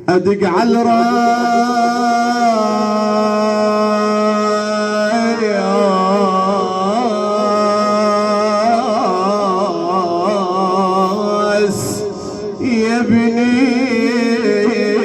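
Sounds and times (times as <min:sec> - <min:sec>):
man singing melismatic lament: 0:00.0 - 0:15.0
sustained drone note: 0:06.0 - 0:12.6.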